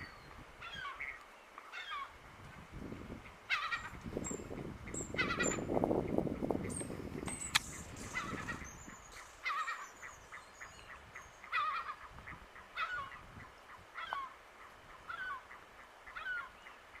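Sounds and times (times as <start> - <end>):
ducks wavering calls: 0.6 - 2.2, 3.2 - 17.0.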